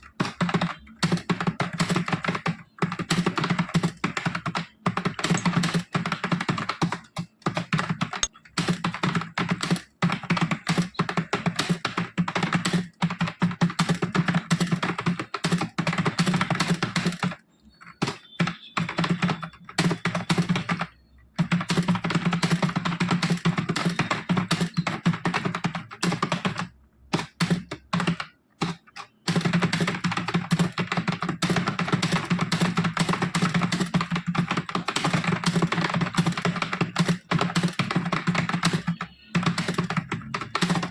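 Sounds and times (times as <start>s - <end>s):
keyboard typing: 0.0s - 40.9s.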